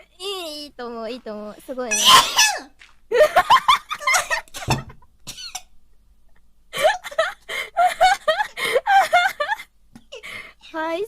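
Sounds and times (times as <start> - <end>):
woman's vocal outbursts: 1.9 - 2.8
woman coughing: 4.3 - 5.6.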